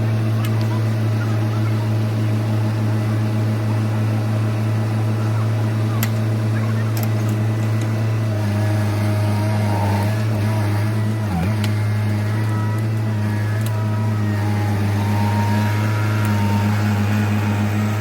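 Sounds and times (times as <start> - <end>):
diesel engine droning: 0.0 - 18.0.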